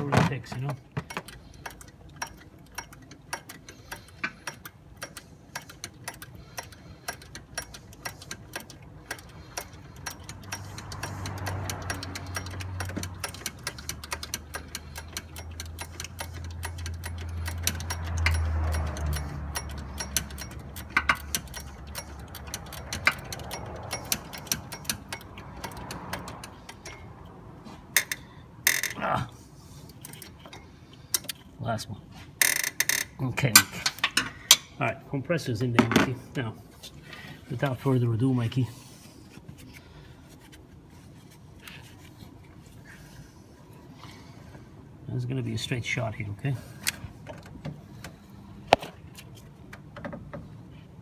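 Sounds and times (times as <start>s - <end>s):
ratchet wrench clicking: 1.1s - 27.1s, 28.0s - 29.0s, 32.4s - 34.7s.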